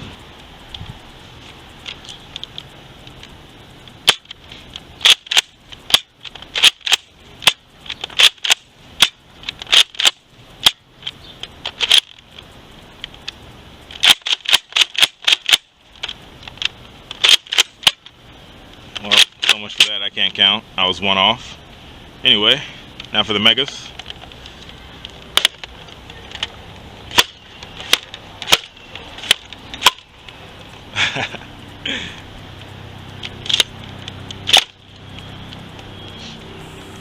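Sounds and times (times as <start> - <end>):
toy blaster pumped and fired: 5.0 - 7.6, 8.2 - 10.8, 14.0 - 15.7, 17.2 - 18.0, 34.4 - 34.8.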